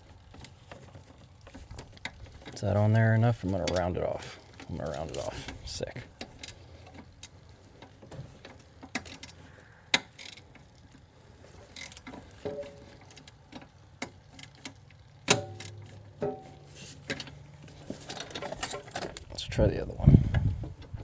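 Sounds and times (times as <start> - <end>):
ringing metal clank: 15.3 - 16.6
metal tools tapping: 15.3 - 16.7.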